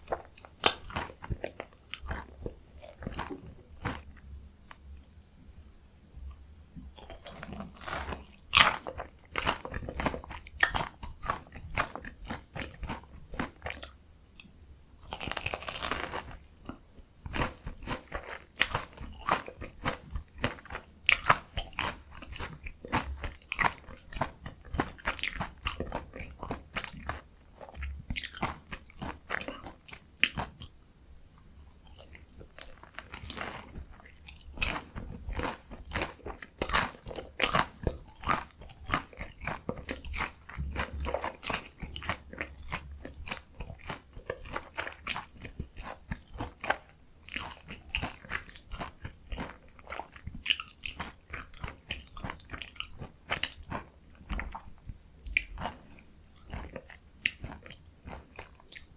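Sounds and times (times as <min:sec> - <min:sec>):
crunchy chewing: 0:00.0 - 0:04.3, 0:06.2 - 0:58.9.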